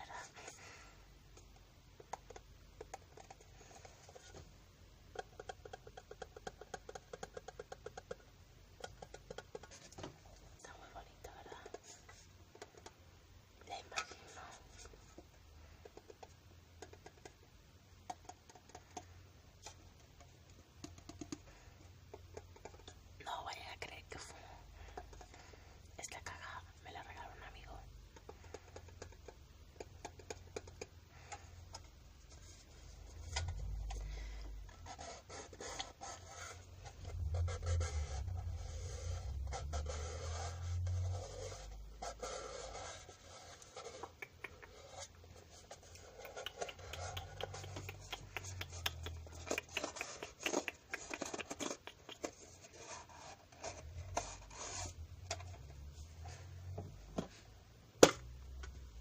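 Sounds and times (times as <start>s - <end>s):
scratching on microphone: 32.3s - 56.6s.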